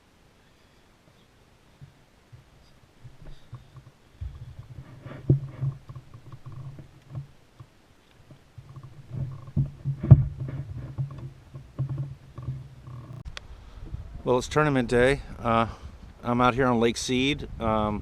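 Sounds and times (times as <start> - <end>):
kayak knocking on water: 3.1 - 7.3, 8.6 - 13.2
low rumbling: 8.6 - 16.7.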